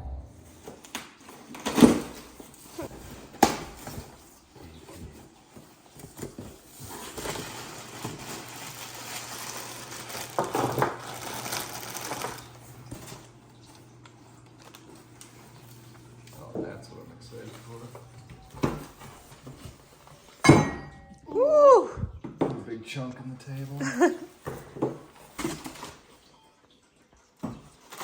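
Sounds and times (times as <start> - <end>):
steady low hum: 0.0 - 0.8.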